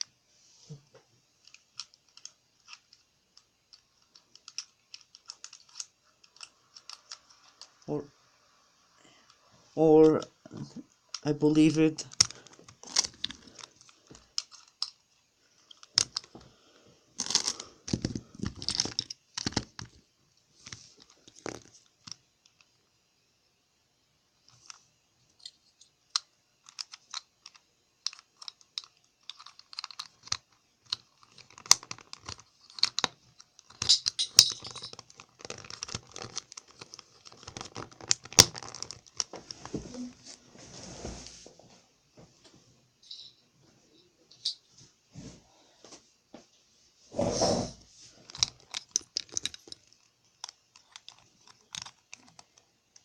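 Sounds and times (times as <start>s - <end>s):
plastic cube pieces clicking: 3.7s - 7.8s, 15.7s - 16.3s, 17.2s - 20.0s, 26.1s - 39.3s, 48.3s - 53.0s.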